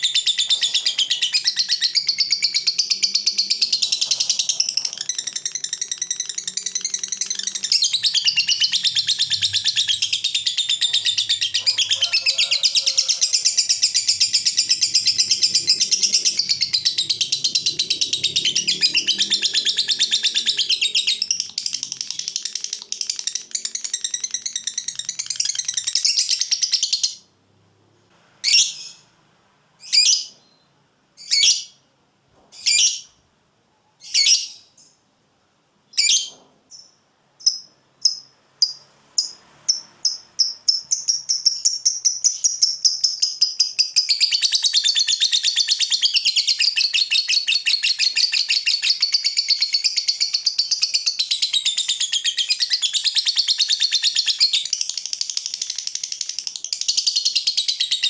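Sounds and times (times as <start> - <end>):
lovebird shrill calls and trill: 0.0 - 27.2, 29.8 - 30.6, 31.2 - 31.8, 32.6 - 33.1, 34.0 - 34.9, 35.9 - 58.0.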